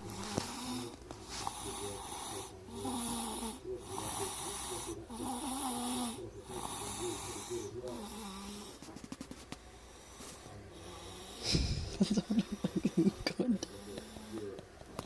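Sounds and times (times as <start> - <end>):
baby snoring: 0.0 - 8.8.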